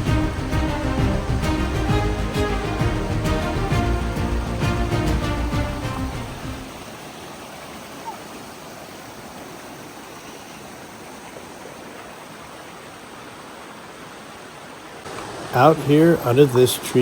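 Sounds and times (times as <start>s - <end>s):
background music: 0.0s - 6.8s
creek water running: 0.0s - 17.0s.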